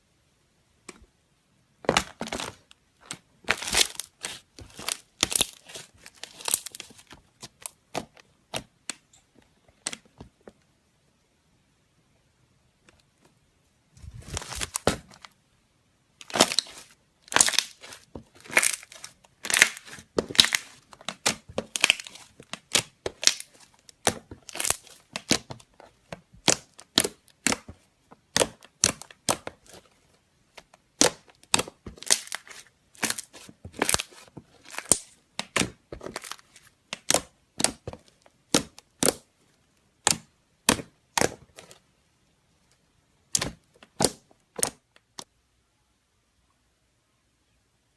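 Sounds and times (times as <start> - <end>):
slime squelching and popping: 1.8 - 10.1, 16.2 - 39.3, 39.9 - 41.8, 43.2 - 45.2.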